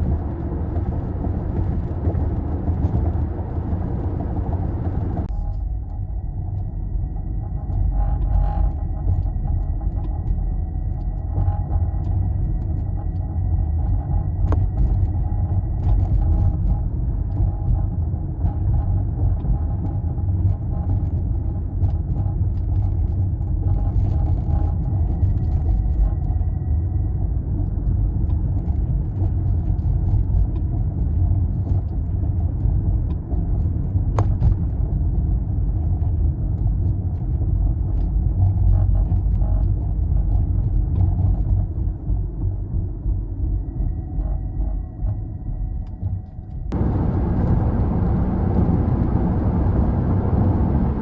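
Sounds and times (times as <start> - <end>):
car road rumble inside: 0.0 - 51.0
faint high whine: 4.9 - 17.6, 43.0 - 51.0.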